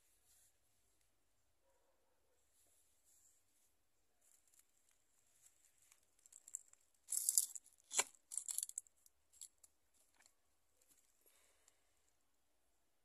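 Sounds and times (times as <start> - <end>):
handling rustles and ticks: 4.2 - 11.3.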